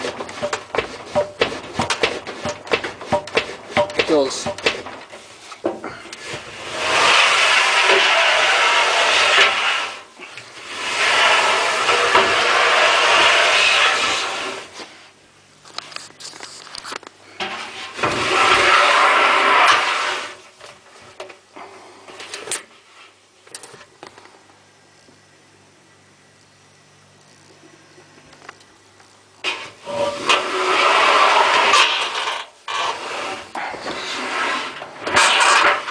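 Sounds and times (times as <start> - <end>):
dryer drum scraping: 0.0 - 15.2, 17.3 - 23.2, 29.4 - 35.9.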